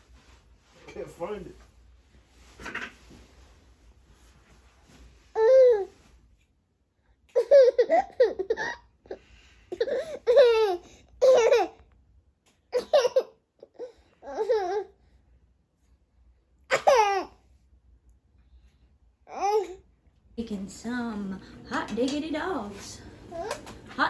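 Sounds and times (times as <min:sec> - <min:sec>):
baby babbling and laughing: 0:09.8 - 0:11.8.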